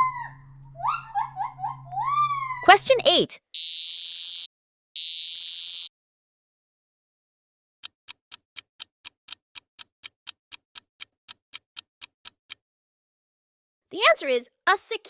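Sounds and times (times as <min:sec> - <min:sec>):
rapid sharp ticks: 0:07.8 - 0:12.6.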